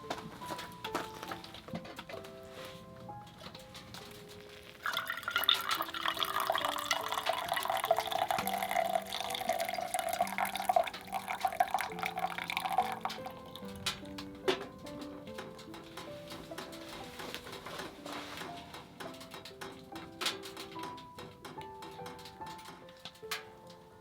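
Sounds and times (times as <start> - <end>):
soft background music: 0.0 - 24.0
water pouring in a stream: 4.5 - 13.7.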